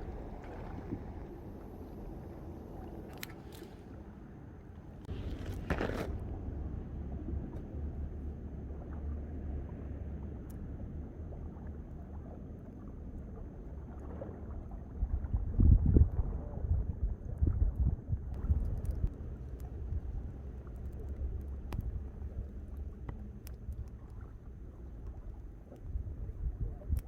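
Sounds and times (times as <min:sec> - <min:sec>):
small waves lapping: 0:00.0 - 0:06.7
wind noise on microphone: 0:15.0 - 0:22.5, 0:25.2 - 0:27.0.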